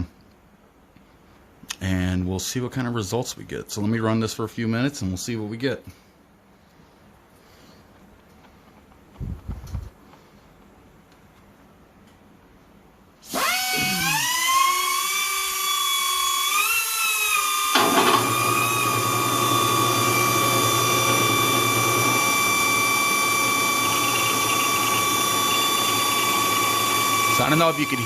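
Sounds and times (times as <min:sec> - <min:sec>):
drill press motor hum: 0:13.3 - 0:28.0
grinder high whine: 0:13.3 - 0:28.0.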